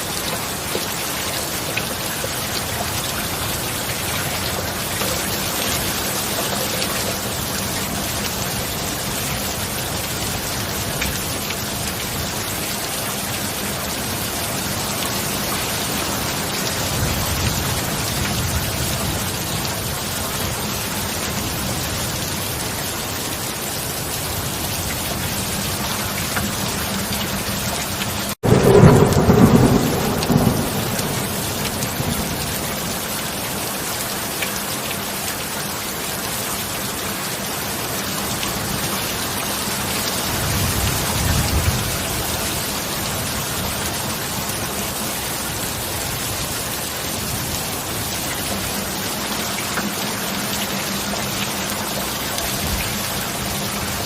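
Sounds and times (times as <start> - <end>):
heavy rain: 0.0 - 54.0
thunderclap: 28.4 - 32.6
low thunder rumble: 28.4 - 33.2, 40.2 - 43.9.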